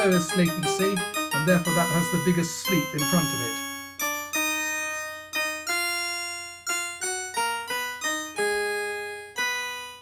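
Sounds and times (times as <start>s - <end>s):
synth ringtone melody: 0.0s - 5.5s.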